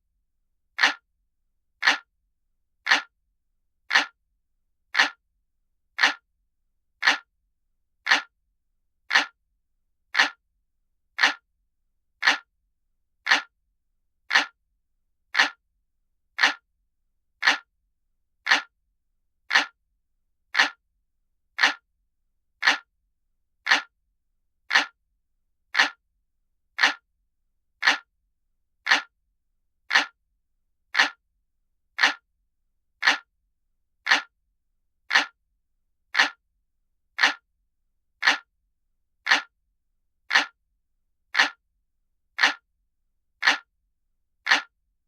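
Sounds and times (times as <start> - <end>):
clock ticking: 0.8 - 1.0, 1.8 - 2.1, 2.9 - 3.1, 3.9 - 4.2, 5.0 - 5.2, 6.0 - 6.2, 7.0 - 7.3, 8.1 - 8.3, 9.1 - 9.4, 10.2 - 10.4, 11.2 - 11.4, 12.2 - 12.5, 13.3 - 13.5, 14.3 - 14.6, 15.4 - 15.6, 16.4 - 16.6, 17.4 - 17.7, 18.5 - 18.7, 19.5 - 19.8, 20.6 - 20.8, 21.6 - 21.8, 22.6 - 22.9, 23.7 - 23.9, 24.7 - 25.0, 25.8 - 26.0, 26.8 - 27.0, 27.8 - 28.1, 28.9 - 29.1, 29.9 - 30.2, 31.0 - 31.2, 32.0 - 32.2, 33.0 - 33.3, 34.0 - 34.3, 35.1 - 35.4, 36.1 - 36.4, 37.2 - 37.4, 38.2 - 38.5, 39.2 - 39.5, 40.3 - 40.6, 41.3 - 41.6, 42.4 - 42.6, 43.4 - 43.7, 44.4 - 44.7.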